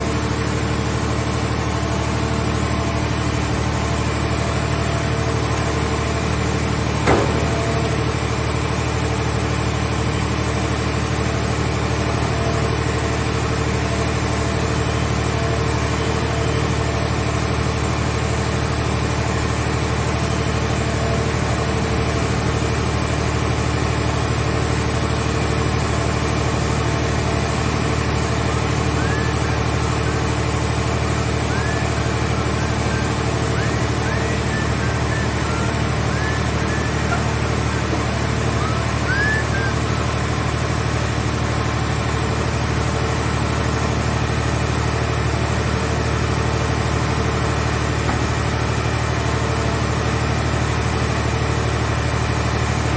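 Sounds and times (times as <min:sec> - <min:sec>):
engine running steadily: 0:00.0 - 0:52.9
sharp knock: 0:07.1 - 0:07.9.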